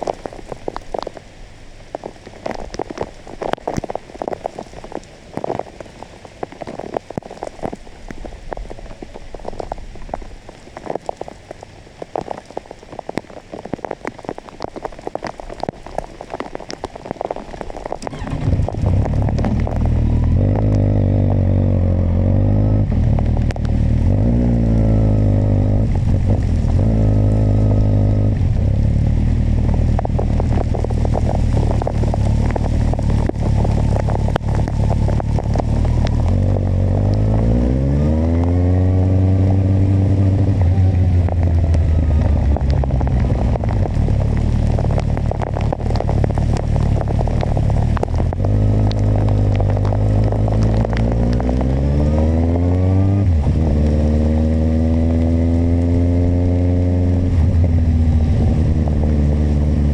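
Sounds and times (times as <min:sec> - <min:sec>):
wind and road noise: 0:00.0 - 0:59.9
motorcycle engine accelerating: 0:18.0 - 0:59.9.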